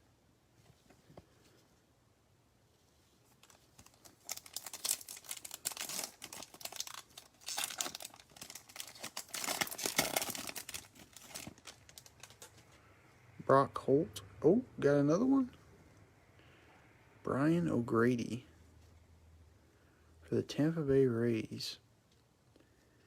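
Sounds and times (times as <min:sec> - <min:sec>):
foil wrapper tearing and crinkling: 0:03.4 - 0:12.5.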